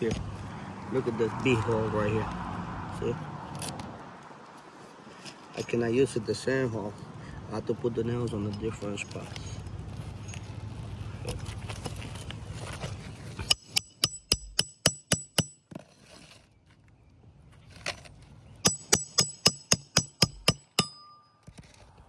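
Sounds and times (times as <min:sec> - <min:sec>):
hammer striking roofing nails: 0:13.4 - 0:15.7, 0:18.7 - 0:21.2.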